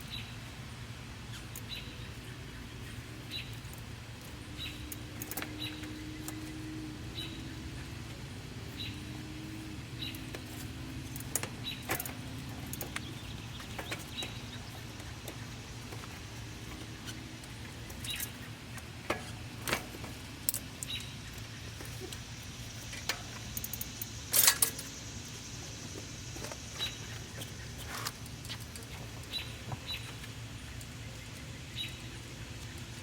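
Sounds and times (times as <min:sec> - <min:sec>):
metal tools clinking: 0:10.2 - 0:15.3, 0:22.9 - 0:25.0.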